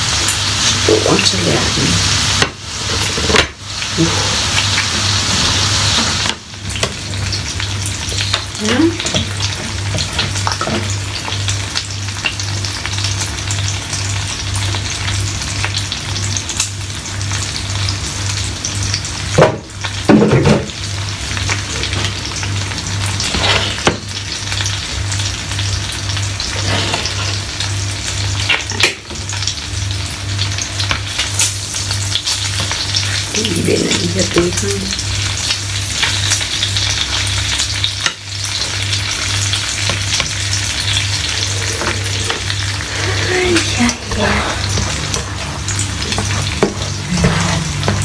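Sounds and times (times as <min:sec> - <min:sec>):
food sizzling in a frying pan: 0:00.0 - 0:48.0
utensil scraping and clattering: 0:26.5 - 0:27.4, 0:41.0 - 0:48.0.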